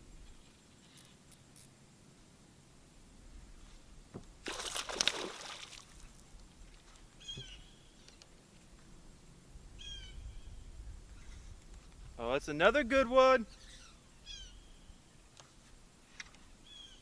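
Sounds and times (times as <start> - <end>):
splash on water: 4.4 - 6.2
bird call: 7.2 - 8.2.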